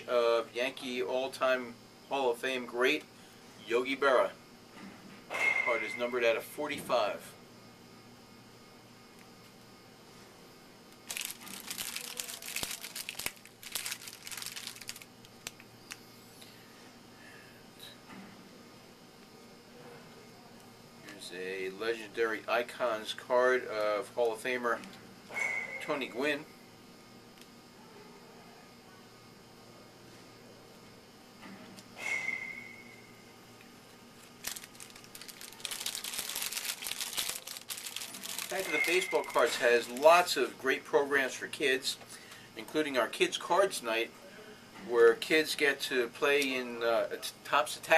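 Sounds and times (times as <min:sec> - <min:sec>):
foil wrapper tearing and crinkling: 0:11.0 - 0:16.0, 0:34.3 - 0:40.2.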